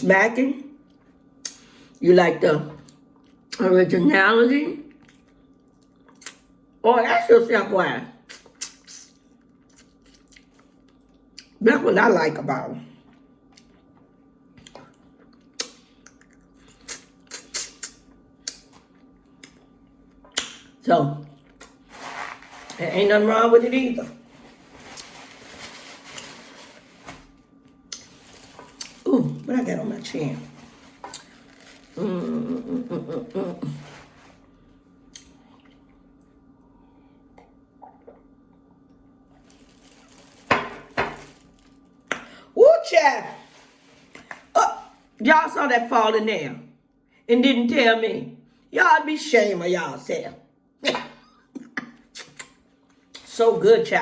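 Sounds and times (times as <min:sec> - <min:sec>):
mouth smacking: 0:15.6 - 0:18.6.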